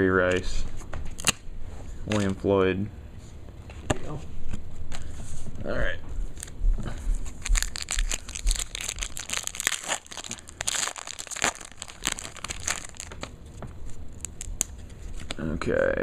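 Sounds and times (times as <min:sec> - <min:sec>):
trading cards crinkling: 0:07.2 - 0:15.5.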